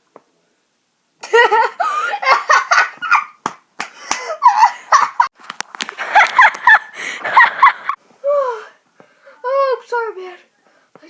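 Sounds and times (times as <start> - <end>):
boy laughing loudly: 1.2 - 3.4, 4.1 - 5.3, 5.9 - 8.0.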